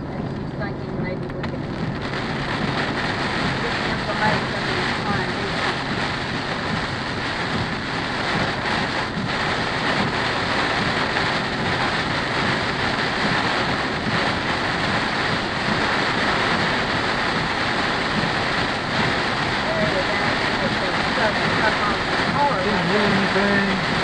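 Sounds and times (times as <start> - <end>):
rain on car: 0.0 - 24.0
tyre noise on wet road: 0.0 - 24.0.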